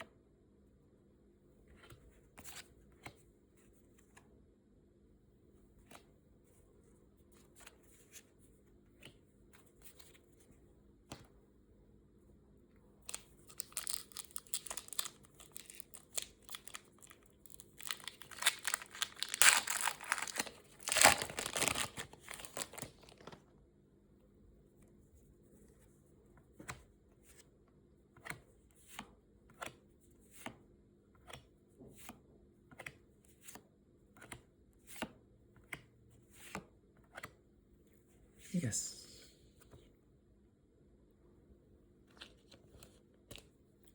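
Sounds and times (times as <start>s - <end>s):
packaging tearing and crinkling: 13.1s - 23.4s.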